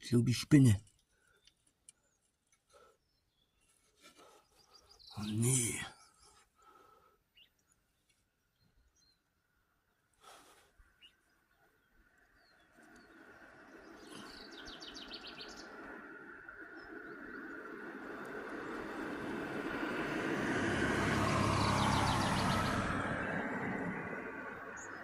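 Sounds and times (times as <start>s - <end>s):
road vehicle passing rumble: 12.0s - 25.0s.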